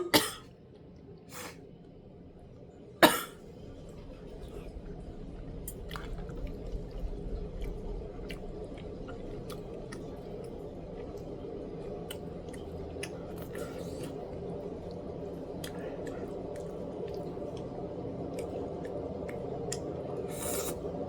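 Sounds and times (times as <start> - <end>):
low background hum: 0.0 - 21.0
person chewing with wet mouth sounds: 5.6 - 21.0.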